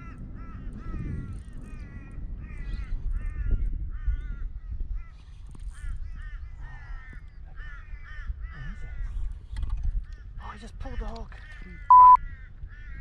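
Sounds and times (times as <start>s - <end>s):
bird calling: 11.5s - 12.2s.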